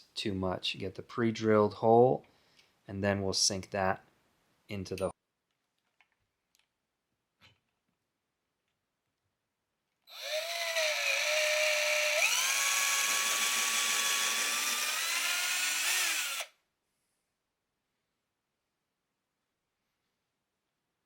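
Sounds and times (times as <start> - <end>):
cordless drill motor whine: 10.1 - 16.5.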